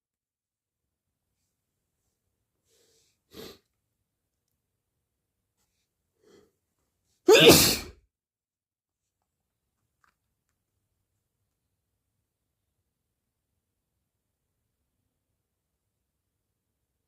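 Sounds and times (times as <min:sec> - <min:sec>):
person sneezing: 0:07.3 - 0:08.0.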